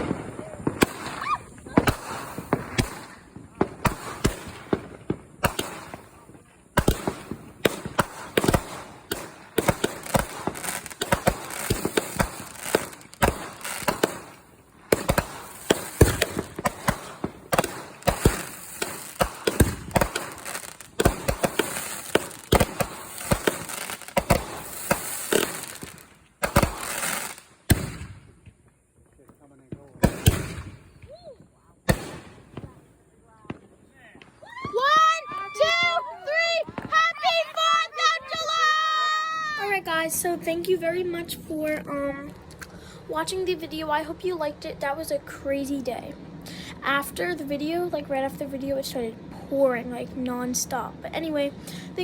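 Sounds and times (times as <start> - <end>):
fireworks bangs and crackling: 0.0 - 52.0.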